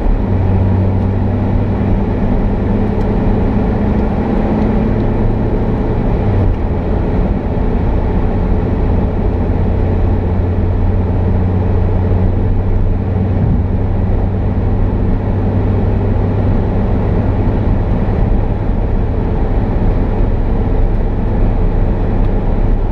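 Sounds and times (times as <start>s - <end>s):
car engine hum: 0.0s - 22.9s
road noise rumble: 0.0s - 22.9s.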